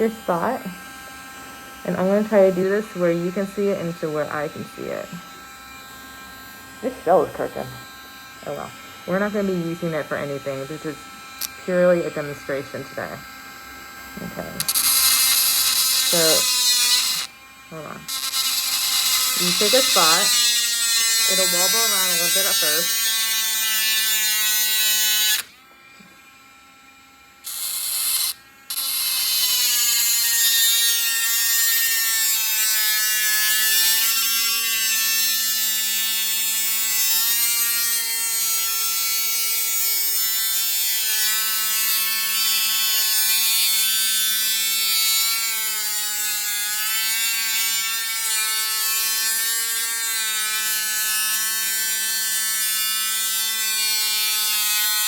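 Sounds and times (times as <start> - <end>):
rotary tool drilling into shell: 14.4 - 17.3, 18.0 - 25.5, 27.4 - 55.0.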